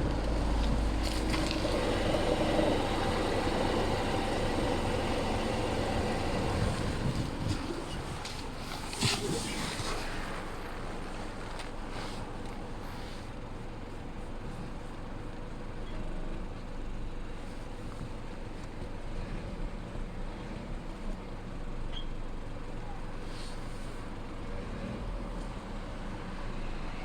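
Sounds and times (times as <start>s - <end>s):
car road noise: 0.0s - 15.6s.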